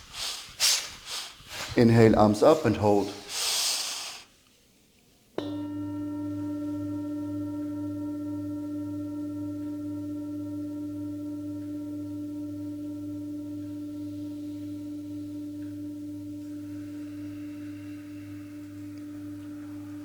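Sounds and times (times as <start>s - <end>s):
loud breath: 0.0s - 1.8s, 3.2s - 4.3s
singing bowl ringing: 5.4s - 20.0s.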